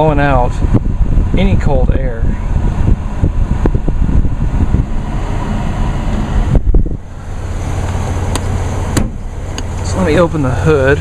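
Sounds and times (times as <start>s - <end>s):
car blower fan running: 0.0s - 11.0s
car engine idling: 0.0s - 11.0s
knocks: 9.0s - 9.2s.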